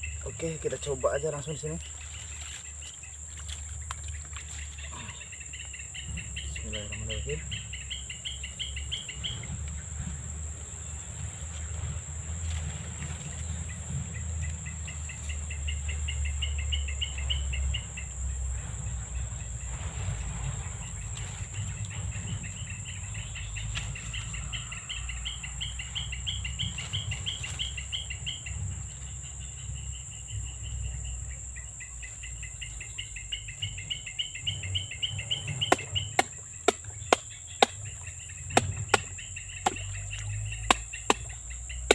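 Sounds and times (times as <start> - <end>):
high-pitched insect whine: 0.0 - 41.9
insects chirping in pulsed trills: 0.0 - 41.9
low rumble: 7.4 - 31.7
sharp knocks: 35.6 - 40.0, 40.6 - 41.9.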